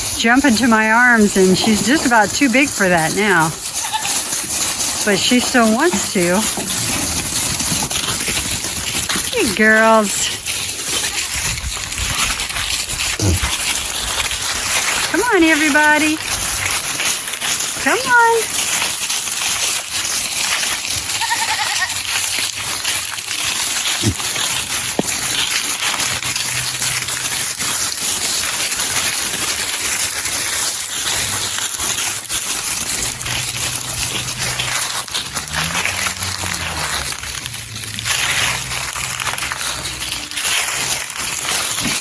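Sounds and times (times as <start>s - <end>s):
goats bleating: 3.6s - 4.4s, 21.0s - 22.2s, 33.7s - 39.7s.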